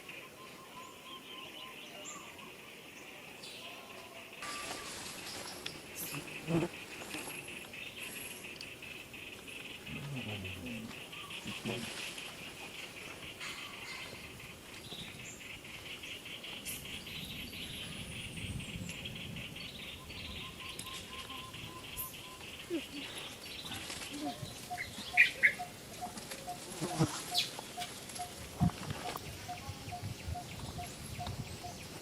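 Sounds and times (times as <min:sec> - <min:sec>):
insects buzzing: 0:04.4 - 0:13.4, 0:20.9 - 0:29.2.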